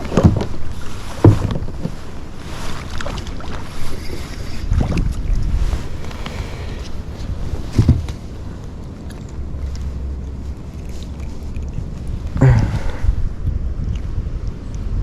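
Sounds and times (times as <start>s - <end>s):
wind buffeting microphone: 4.1s - 15.0s
sudden knocks: 5.7s - 8.4s.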